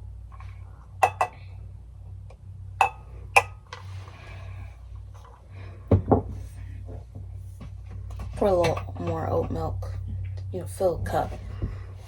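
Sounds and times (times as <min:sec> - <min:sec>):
glass cup clinking: 0:01.0 - 0:01.4, 0:02.8 - 0:03.6.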